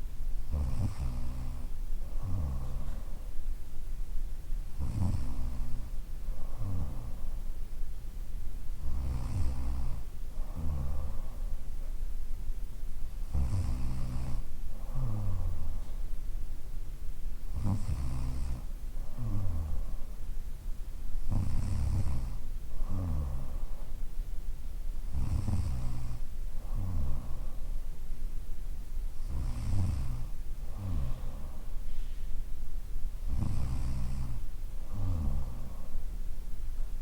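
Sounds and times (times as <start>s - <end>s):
woman snoring: 0.5s - 3.0s, 4.8s - 7.4s, 8.8s - 11.4s, 13.3s - 15.9s, 17.5s - 20.1s, 21.3s - 23.8s, 25.1s - 27.6s, 29.2s - 31.7s, 33.3s - 35.9s.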